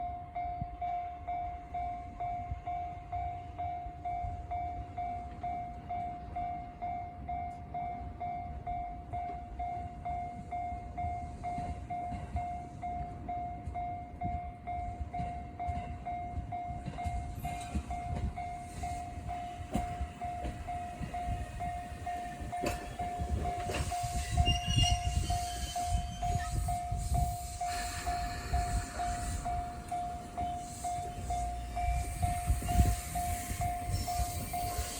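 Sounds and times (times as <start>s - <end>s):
level crossing warning bell: 0.0s - 34.9s
train rumbling past: 0.0s - 34.9s
high train squeal: 10.3s - 34.9s.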